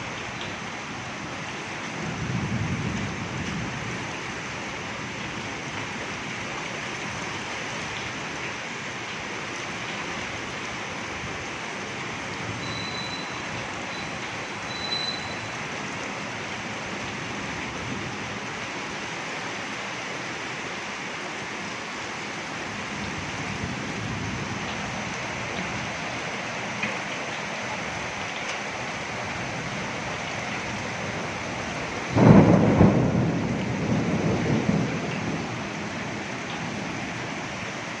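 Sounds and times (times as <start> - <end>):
steady rain: 0.0 - 38.0
thunderclap rumbling: 29.4 - 37.2.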